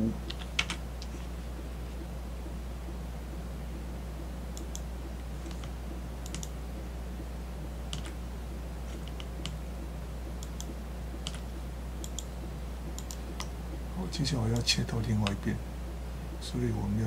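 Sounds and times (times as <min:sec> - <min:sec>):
low electrical hum: 0:00.0 - 0:17.0
mouse and keyboard clicks: 0:04.6 - 0:06.6, 0:07.9 - 0:08.2, 0:08.9 - 0:09.6, 0:10.4 - 0:11.4, 0:12.0 - 0:12.3, 0:12.9 - 0:13.6.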